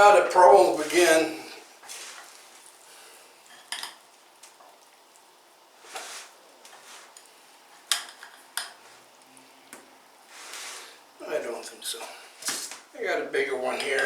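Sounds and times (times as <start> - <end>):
soft mushy rustle: 0.5 - 7.8.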